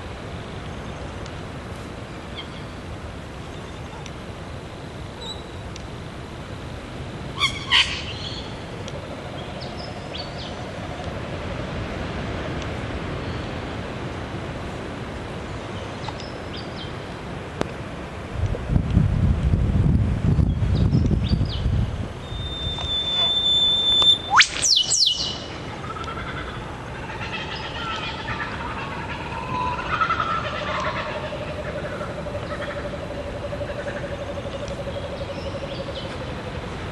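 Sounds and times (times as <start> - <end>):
faint high chirps: 22.2 - 26.2
bird sharp call notes: 22.3 - 33.0
bird whistle with whip-crack: 22.4 - 25.4.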